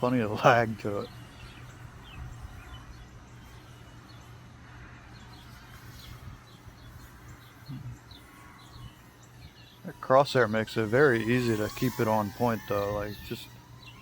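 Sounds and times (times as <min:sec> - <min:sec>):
high bird chirps: 0:05.2 - 0:14.0.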